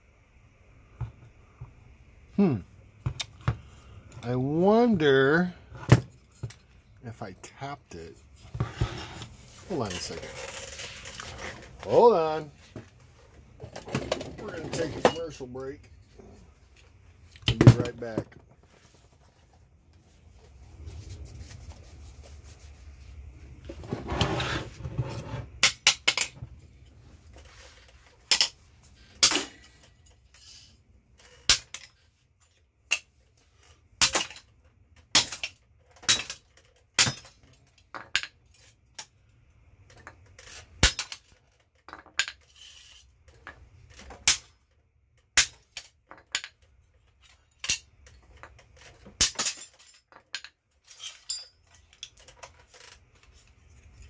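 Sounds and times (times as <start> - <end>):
metal tools clinking and tapping: 45.6 - 54.0.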